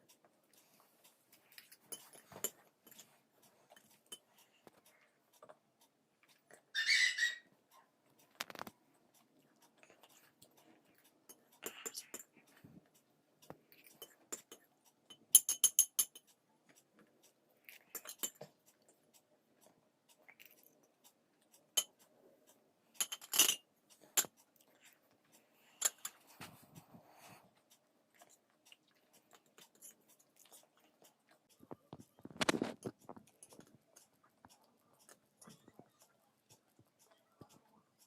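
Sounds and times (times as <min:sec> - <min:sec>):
spoon clinking and scraping plate: 0:13.8 - 0:16.3, 0:17.7 - 0:18.4, 0:23.0 - 0:24.3.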